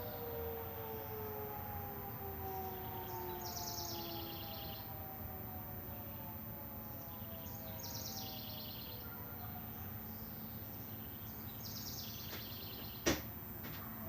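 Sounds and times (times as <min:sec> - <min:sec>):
distant tornado siren winding down: 0:00.0 - 0:14.0
songbird trilling: 0:07.0 - 0:09.5.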